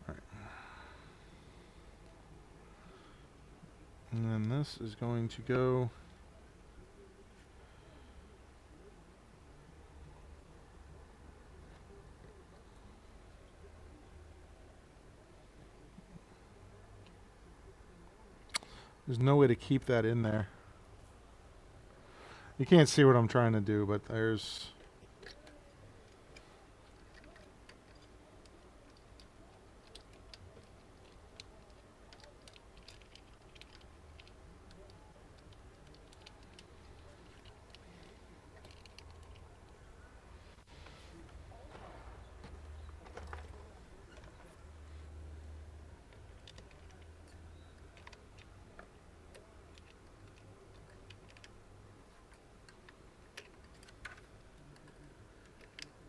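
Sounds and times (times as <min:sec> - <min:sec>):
computer parts clicking: 0:24.8 - 0:39.8.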